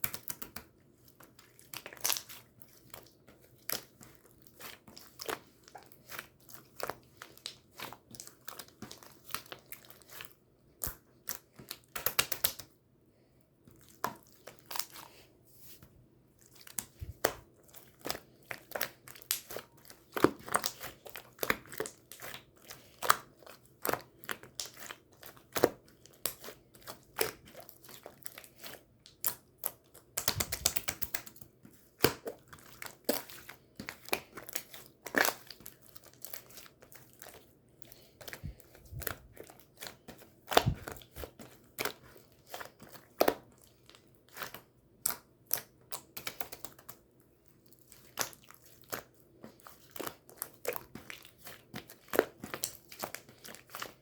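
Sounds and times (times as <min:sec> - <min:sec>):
slime squished by hand: 0:16.4 - 0:54.0.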